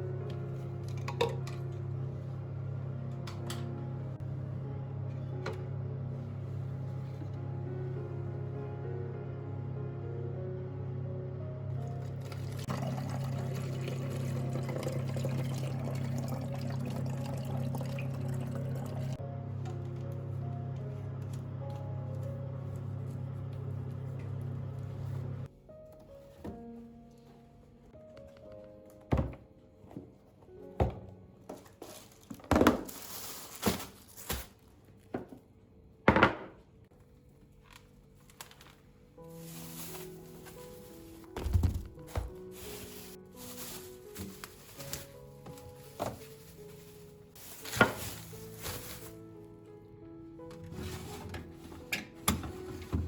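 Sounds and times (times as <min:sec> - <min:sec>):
water pouring and splashing: 0:12.2 - 0:19.2
crinkling rustle: 0:31.7 - 0:35.1, 0:37.4 - 0:41.3, 0:41.9 - 0:49.4
household items knocking and thudding: 0:41.4 - 0:46.4, 0:47.6 - 0:49.1.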